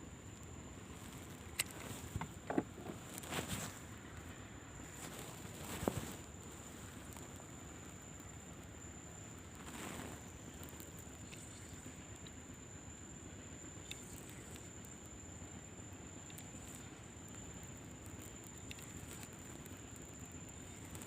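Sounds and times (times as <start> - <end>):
faint ticks: 0.3 - 21.0
high-pitched insect drone: 7.6 - 21.0.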